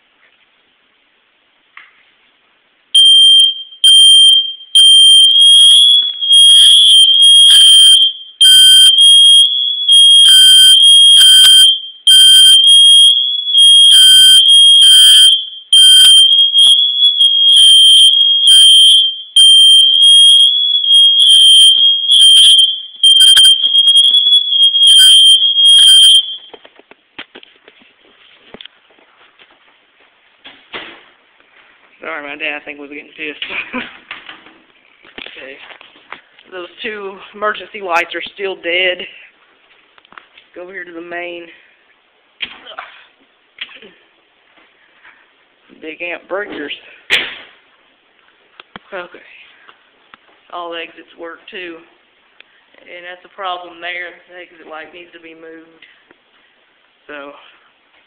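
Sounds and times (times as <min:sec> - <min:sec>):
fire alarm piercing tone: 0:03.0 - 0:26.6.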